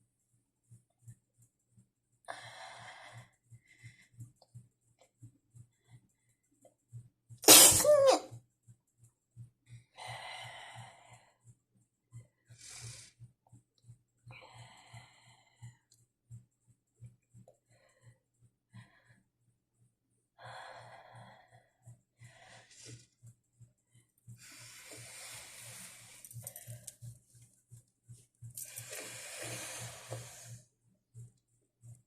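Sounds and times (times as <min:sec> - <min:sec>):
woman breathing faintly: 0:02.3 - 0:04.6, 0:09.7 - 0:13.3, 0:14.2 - 0:16.0, 0:17.5 - 0:19.5, 0:20.4 - 0:27.2, 0:28.6 - 0:30.7.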